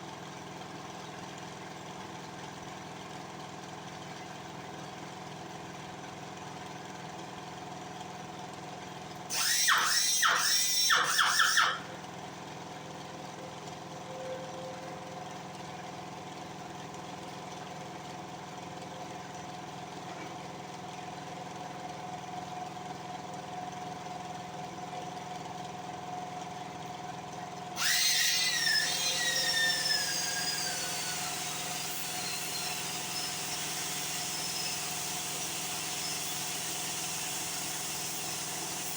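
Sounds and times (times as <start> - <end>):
loud metallic squeal: 9.3 - 12.0, 27.8 - 38.9
workshop machinery hum: 27.8 - 38.9.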